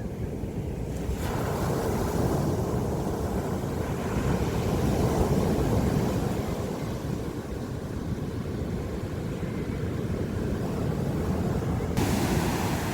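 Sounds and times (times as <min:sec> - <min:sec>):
sea surf rushing: 0:12.0 - 0:12.9.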